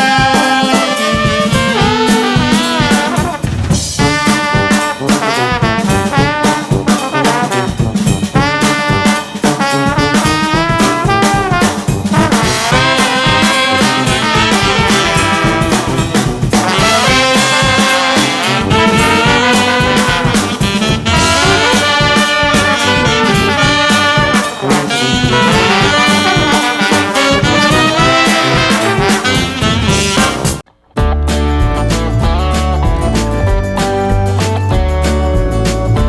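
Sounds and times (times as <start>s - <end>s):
brass swing jazz music: 0.0s - 36.0s.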